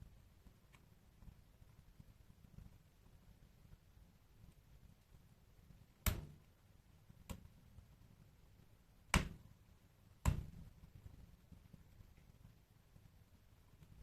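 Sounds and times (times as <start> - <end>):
faint low rumble: 0.0 - 14.0
wood fire crackling: 0.0 - 14.0.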